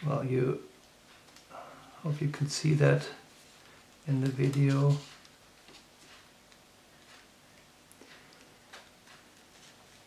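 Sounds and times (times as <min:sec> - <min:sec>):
paper rustling and crinkling: 0:03.4 - 0:06.3.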